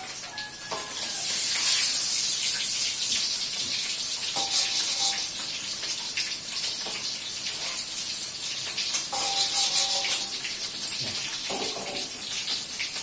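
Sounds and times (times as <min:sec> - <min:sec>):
chicken deep-frying in oil: 0:00.0 - 0:13.0
metallic ring of a pan: 0:09.1 - 0:10.4.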